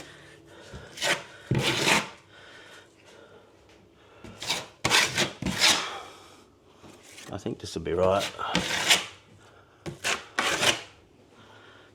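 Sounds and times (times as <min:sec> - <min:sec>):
plaster scraping against wall: 0:00.9 - 0:02.2, 0:04.3 - 0:05.8, 0:08.1 - 0:09.2, 0:09.9 - 0:11.0.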